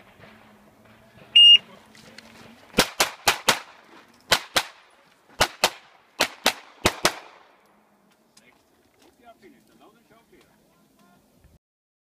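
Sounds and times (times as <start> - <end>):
rapid pistol shots: 2.8 - 4.8, 5.4 - 7.4.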